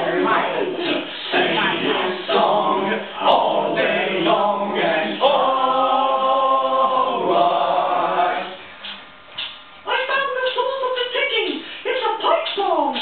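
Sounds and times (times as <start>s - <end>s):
voices singing a cappella: 0.0s - 9.1s.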